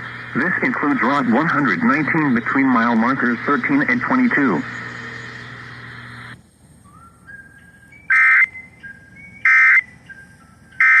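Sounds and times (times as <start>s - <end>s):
two-tone digital screeches: 1.8s - 6.4s, 8.0s - 8.5s.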